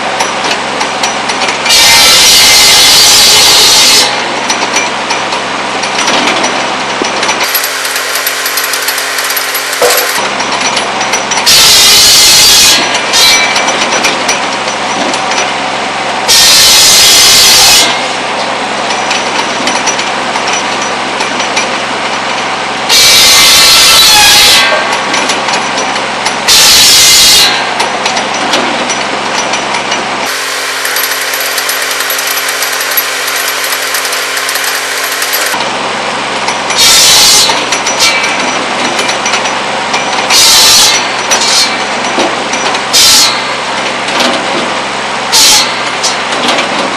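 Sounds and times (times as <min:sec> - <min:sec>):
buzz saw cutting wood: 0:30.3 - 0:35.6.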